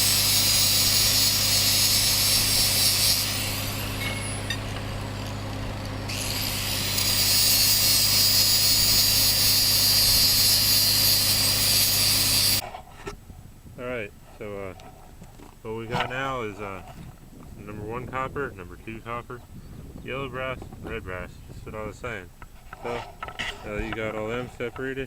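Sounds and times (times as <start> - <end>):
power tool high whine: 0.0 - 12.6.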